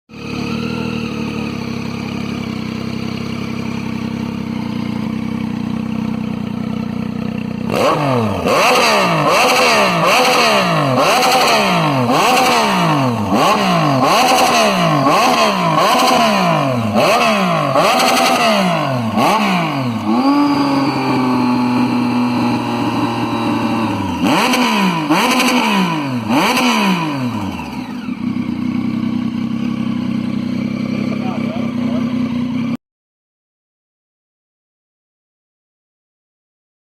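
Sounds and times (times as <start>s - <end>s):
motorcycle engine idling and revving: 0.1s - 32.8s.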